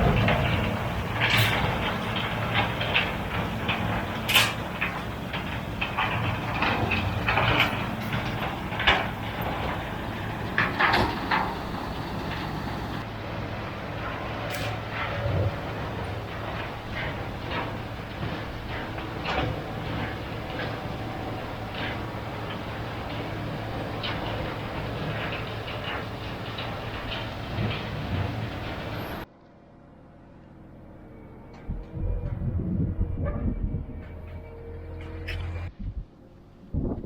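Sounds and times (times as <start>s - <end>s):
metallic clanks and rattles: 0.0s - 13.2s, 13.9s - 29.3s
tractor engine running: 0.0s - 29.4s.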